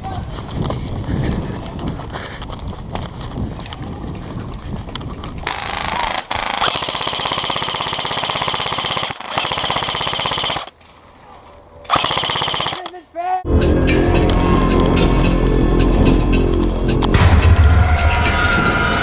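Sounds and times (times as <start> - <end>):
airsoft gun full auto fire: 5.5 - 10.7, 11.9 - 12.9.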